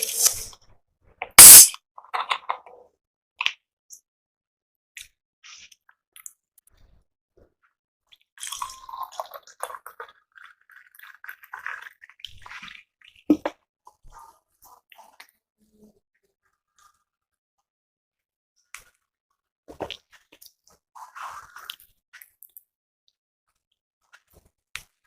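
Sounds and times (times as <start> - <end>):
sharp loud click: 1.4 - 1.8.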